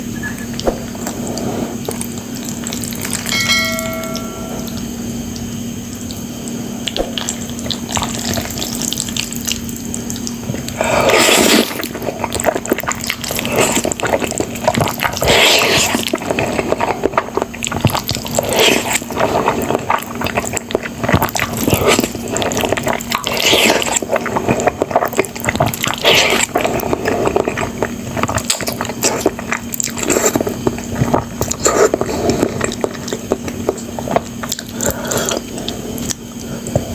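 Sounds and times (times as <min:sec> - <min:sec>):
slurping and chewing noodles: 0:00.0 - 0:03.4, 0:06.0 - 0:36.9
steady low hum: 0:00.0 - 0:15.3
chime-like tone: 0:03.3 - 0:05.1.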